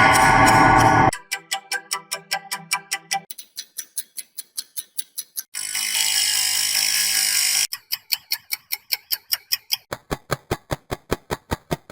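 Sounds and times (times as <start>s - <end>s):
pitched drone: 0.0s - 1.2s
fast clock ticks: 0.0s - 11.9s.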